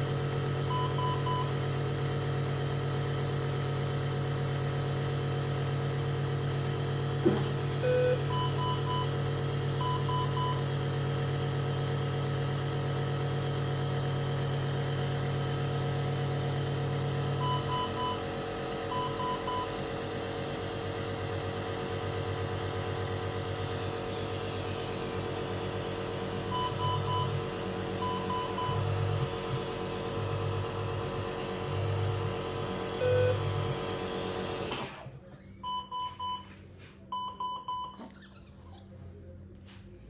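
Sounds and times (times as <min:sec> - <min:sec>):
compressor humming: 0:00.0 - 0:40.0
monitor alarm high beeps: 0:07.8 - 0:09.1.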